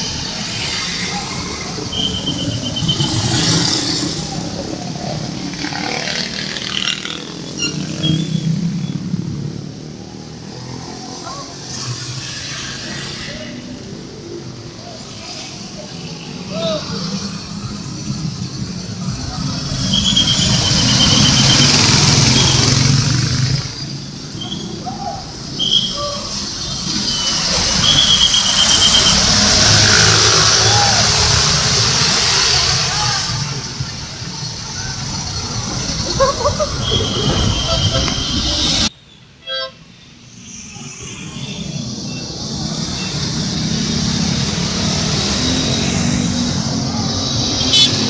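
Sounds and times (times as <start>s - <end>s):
bus passing close by: 0.0s - 38.9s
loud rushing noise: 0.0s - 38.9s, 40.2s - 48.0s
road traffic: 0.0s - 48.0s.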